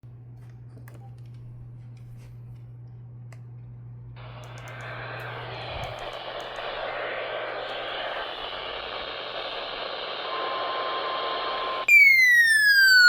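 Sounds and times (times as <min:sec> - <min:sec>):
low electrical hum: 0:00.0 - 0:13.0
faint clicks: 0:04.2 - 0:06.8
radio static hiss: 0:04.2 - 0:11.9.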